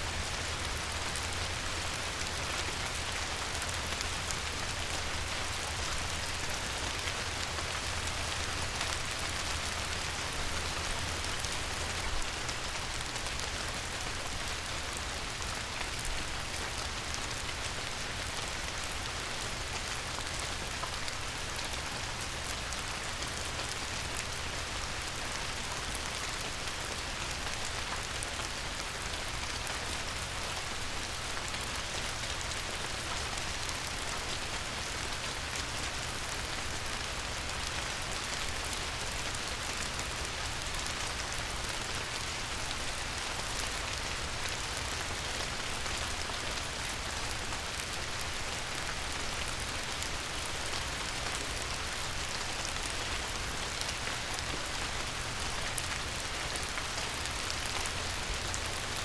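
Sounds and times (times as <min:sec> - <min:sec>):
rain pattering on water: 0:00.0 - 0:59.0.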